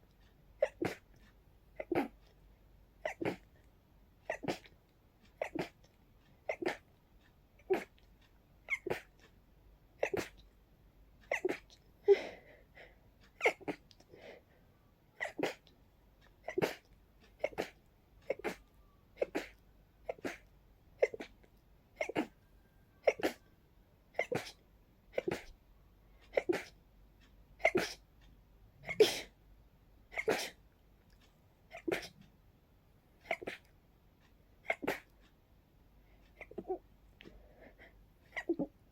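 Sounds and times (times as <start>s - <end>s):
person sneezing: 24.2s - 24.6s, 28.8s - 29.3s, 30.1s - 30.6s, 31.7s - 32.1s.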